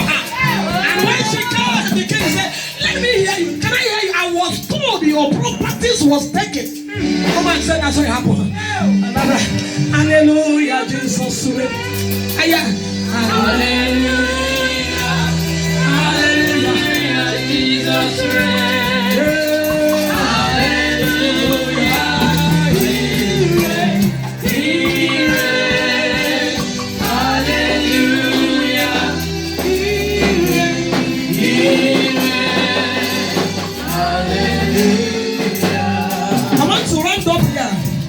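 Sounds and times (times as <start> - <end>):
gospel choir singing: 0.0 - 3.8, 6.8 - 10.0, 10.8 - 38.0
instrumental accompaniment with bass: 0.0 - 38.0.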